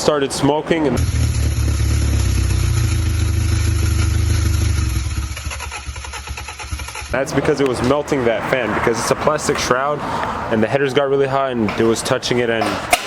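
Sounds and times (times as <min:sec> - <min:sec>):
car engine rumbling: 0:00.9 - 0:10.7.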